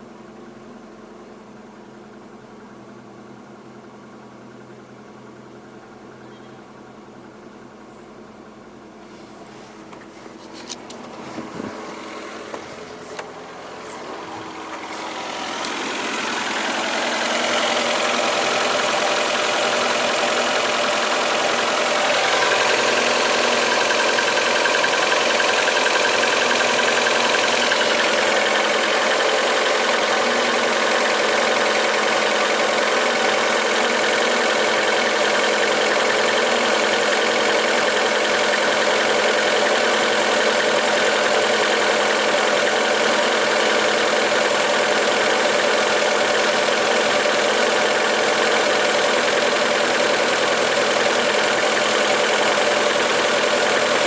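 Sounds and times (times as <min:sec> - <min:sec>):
car engine idling: 0:00.0 - 0:54.0
clicks: 0:14.7 - 0:15.8.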